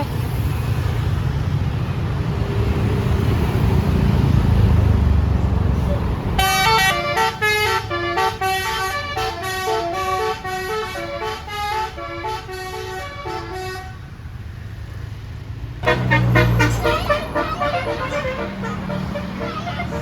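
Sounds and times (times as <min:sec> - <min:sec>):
bus multi-note horn tune: 0:06.4 - 0:14.2, 0:15.8 - 0:20.0.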